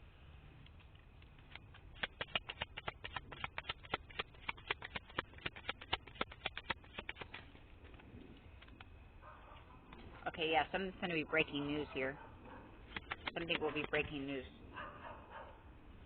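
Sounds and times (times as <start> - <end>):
sharp taps and clicks: 0.6 - 8.9, 12.9 - 14.2.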